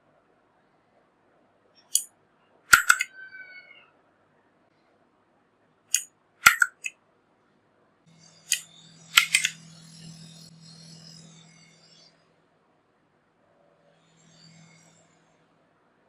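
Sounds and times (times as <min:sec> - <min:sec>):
packaging clicks and snaps: 0:02.7 - 0:03.1, 0:06.0 - 0:06.9, 0:09.2 - 0:09.6.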